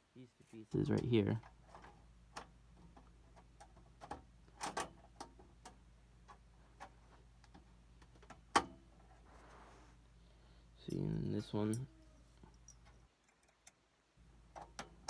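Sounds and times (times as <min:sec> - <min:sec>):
hands tapping computer parts: 0:00.8 - 0:08.9, 0:14.4 - 0:15.0.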